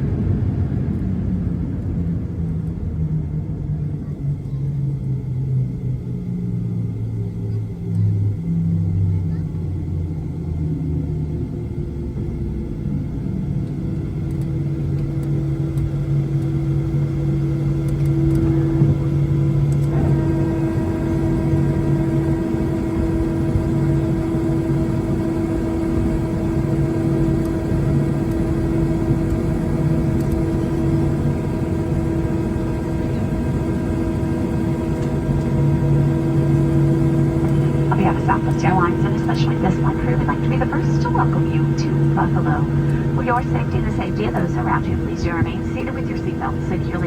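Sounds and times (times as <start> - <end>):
jet cabin engine rumble: 0.0 - 47.0
higher steady tones: 33.6 - 47.0.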